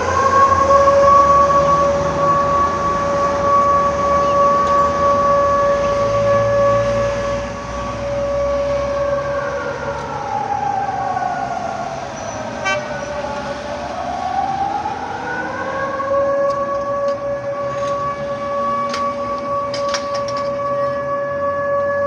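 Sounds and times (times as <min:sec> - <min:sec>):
air-raid sirens wailing: 0:00.0 - 0:22.0.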